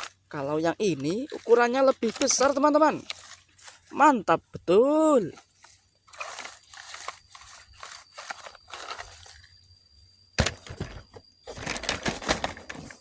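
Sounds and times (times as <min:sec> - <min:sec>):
crackly rustling from handling: 0:01.3 - 0:03.9, 0:05.3 - 0:09.6, 0:10.4 - 0:13.0.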